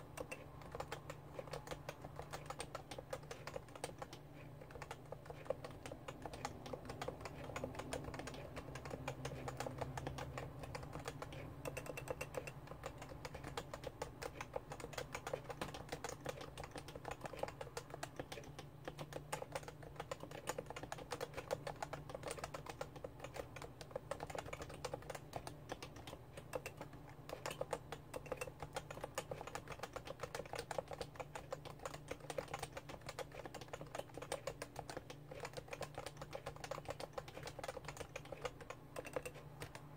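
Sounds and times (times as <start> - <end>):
fast keyboard typing: 0.0 - 39.9.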